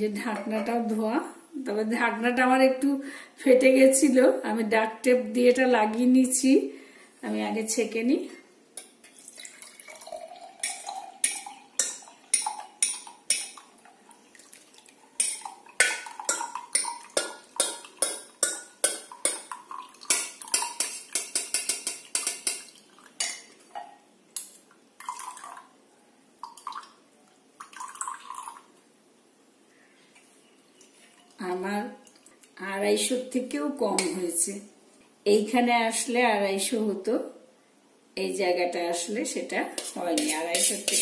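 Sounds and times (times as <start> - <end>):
liquid pouring and dripping: 9.0 - 25.8, 26.4 - 28.8, 30.1 - 31.4, 32.0 - 32.6.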